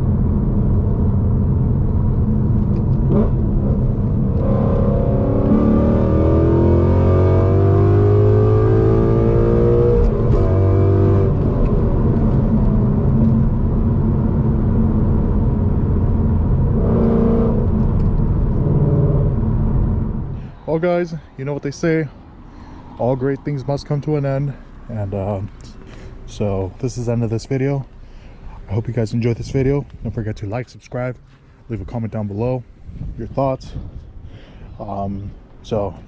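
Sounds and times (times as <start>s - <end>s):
car engine accelerating: 0.0s - 20.4s.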